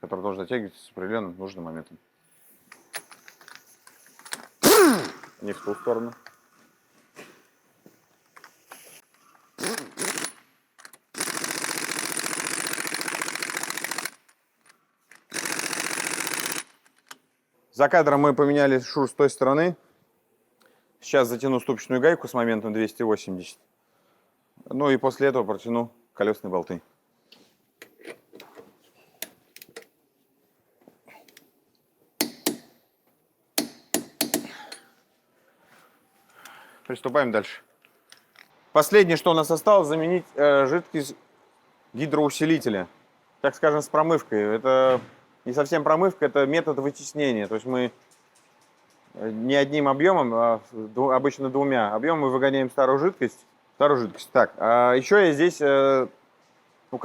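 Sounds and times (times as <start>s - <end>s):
torque wrench clicking: 4.3s - 5.4s, 9.6s - 14.3s, 15.1s - 17.2s, 32.2s - 32.7s, 33.6s - 34.8s
impact wrench hammering: 4.6s - 5.4s, 15.3s - 16.7s, 32.2s - 32.8s, 33.6s - 34.9s.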